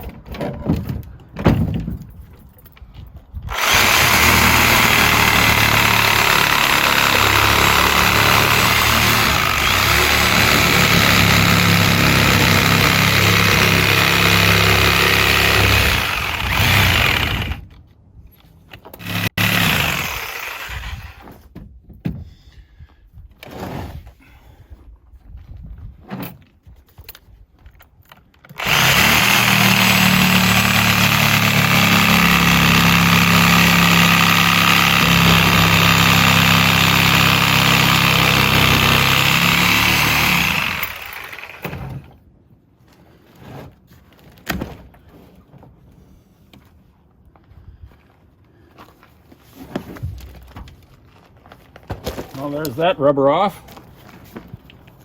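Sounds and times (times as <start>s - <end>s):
reciprocating saw cutting rubber: 3.5s - 17.7s, 19.0s - 21.3s, 28.6s - 42.0s.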